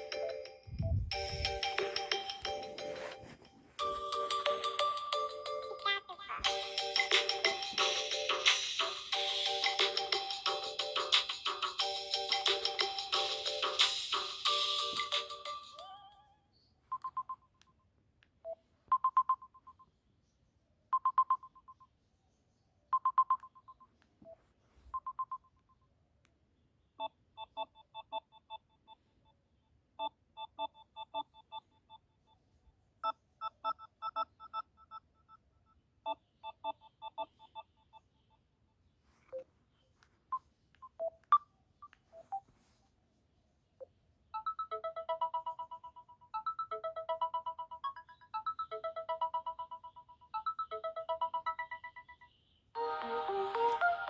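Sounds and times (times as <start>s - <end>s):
ringtone melody of bright beeps: 0.0s - 16.2s, 44.4s - 54.0s.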